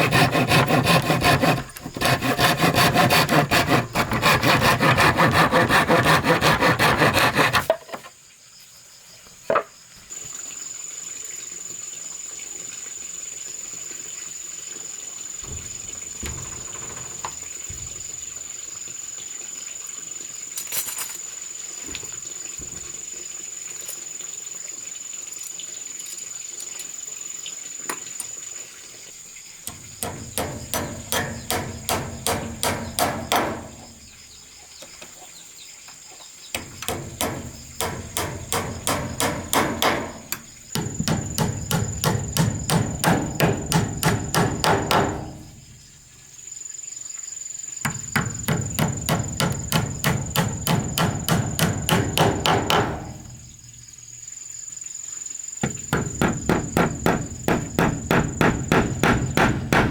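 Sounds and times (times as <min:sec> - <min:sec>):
rhythmic tool work on wood: 0:00.0 - 0:08.0, 0:29.7 - 0:34.0, 0:36.6 - 0:45.7, 0:47.9 - 0:53.4, 0:55.6 - 0:59.9
hand sawing wood: 0:00.0 - 0:08.1, 0:29.7 - 0:34.0, 0:36.6 - 0:45.6, 0:47.9 - 0:53.4, 0:55.6 - 0:59.9.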